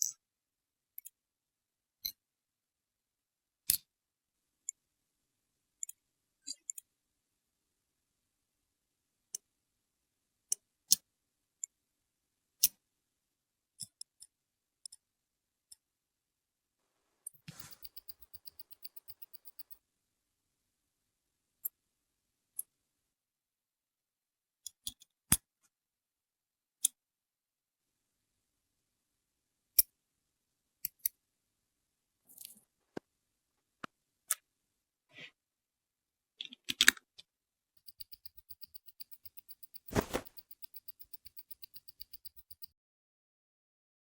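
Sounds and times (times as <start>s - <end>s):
metal tools clicking on watch parts: 17.3s - 19.8s, 37.8s - 42.7s.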